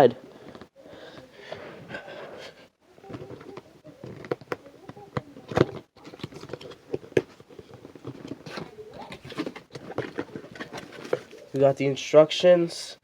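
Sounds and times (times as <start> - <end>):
cardboard box rustling and knocking: 3.1 - 11.5.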